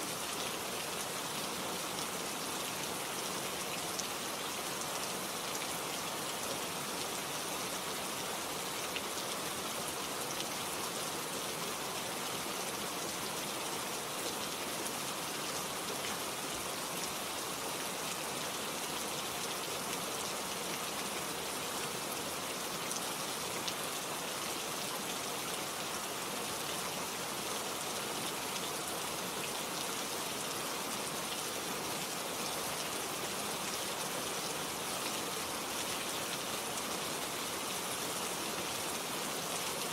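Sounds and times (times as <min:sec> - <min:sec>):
steady rain hiss: 0:00.0 - 0:39.9.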